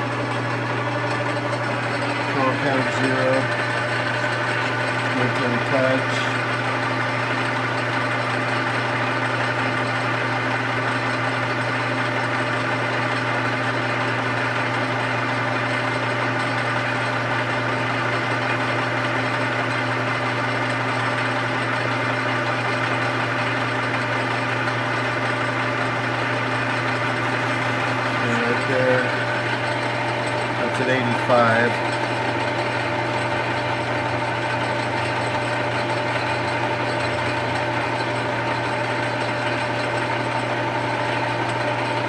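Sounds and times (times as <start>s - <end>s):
metal lathe humming: 0.0s - 7.9s, 23.2s - 39.8s.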